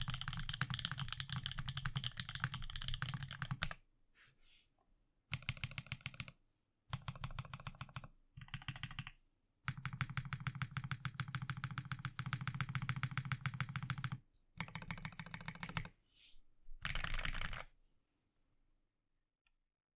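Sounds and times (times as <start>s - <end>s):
typing on mechanical keyboard: 0.0s - 3.8s, 5.3s - 15.9s, 16.8s - 17.7s.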